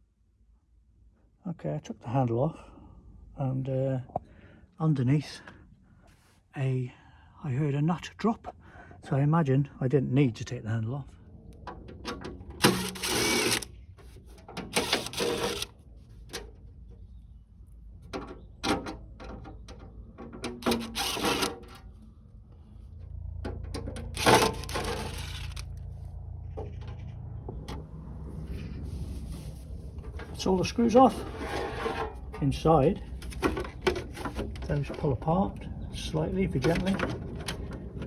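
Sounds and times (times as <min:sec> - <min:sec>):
low steady hum: 0:00.0 - 0:38.0
screwdriver and screws clicking: 0:12.0 - 0:13.7, 0:14.4 - 0:15.7, 0:20.4 - 0:21.8, 0:23.8 - 0:25.8
short scraping rattles: 0:18.1 - 0:22.0, 0:23.5 - 0:27.7, 0:28.4 - 0:35.3.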